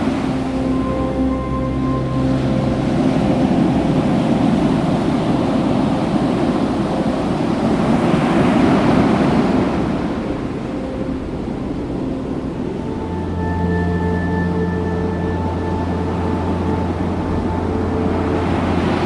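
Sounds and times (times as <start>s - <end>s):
waves washing on beach: 0.0s - 13.4s.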